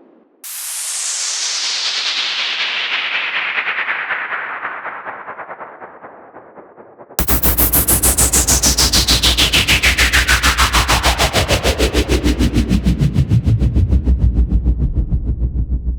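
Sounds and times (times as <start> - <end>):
pulsing falling noise sweep: 7.2 - 15.8
deep bass drone: 7.2 - 15.9.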